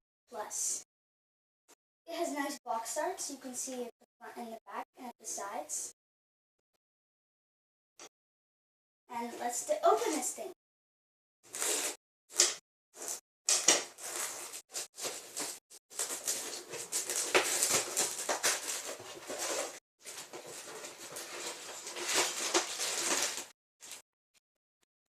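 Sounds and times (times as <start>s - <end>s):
plastic bags rustling: 13.5s - 24.0s
cardboard box tearing: 14.0s - 23.5s.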